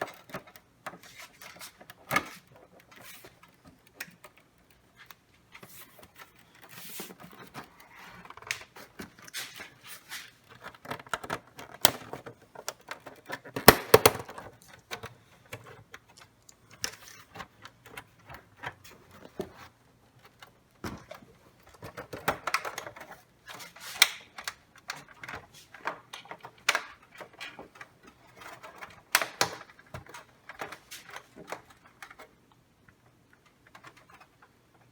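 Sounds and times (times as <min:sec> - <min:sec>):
plastic clicks and taps: 0:13.6 - 0:14.4.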